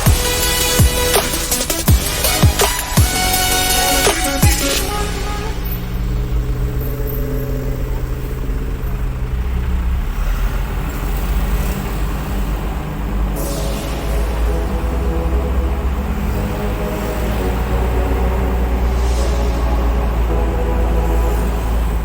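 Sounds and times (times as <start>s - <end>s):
deep bass kick drums: 0.0s - 4.8s
electronic dance music: 0.0s - 5.9s, 13.4s - 22.0s
diesel engine rumbling: 0.0s - 22.0s.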